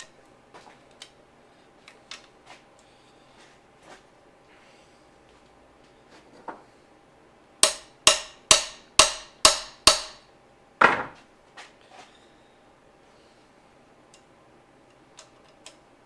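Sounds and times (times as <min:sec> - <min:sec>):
ringing hammer blows: 0:07.6 - 0:10.2.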